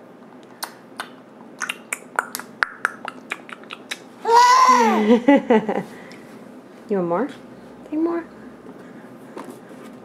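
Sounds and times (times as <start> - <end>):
baby vocalizing loudly: 4.2 - 5.0.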